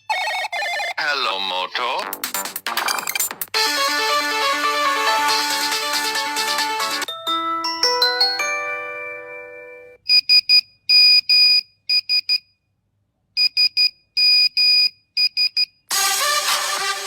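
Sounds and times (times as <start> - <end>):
melodic phone ringtone chimes: 3.9 - 10.0.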